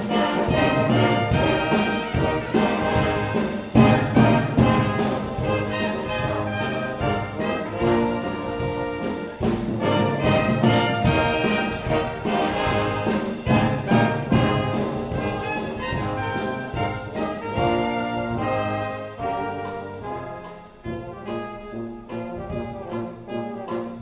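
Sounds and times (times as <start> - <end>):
brass band playing: 0.0 - 24.0
steady drum beat: 0.0 - 24.0.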